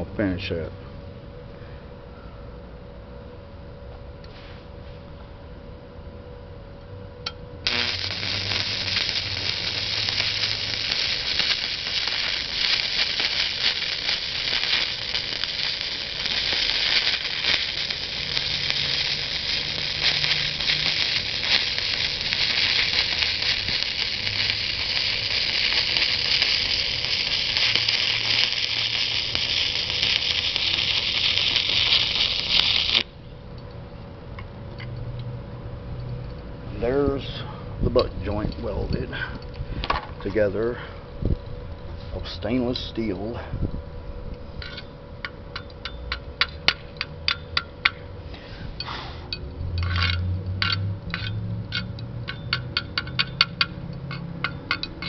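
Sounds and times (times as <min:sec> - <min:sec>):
welding arc crackling sizzle: 0:07.6 - 0:33.2, 0:49.6 - 0:55.0.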